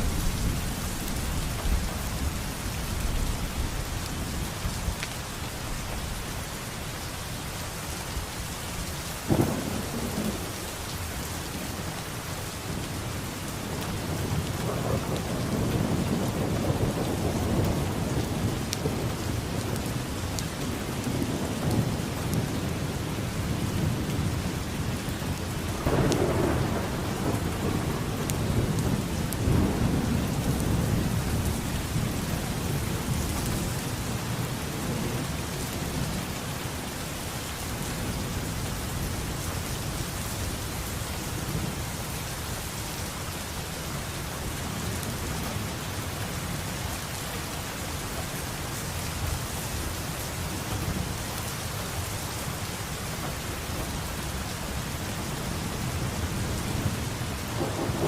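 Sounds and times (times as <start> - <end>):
heavy rain falling: 0.0 - 58.0
low rolling thunder rumbles: 9.3 - 42.4, 52.6 - 58.0.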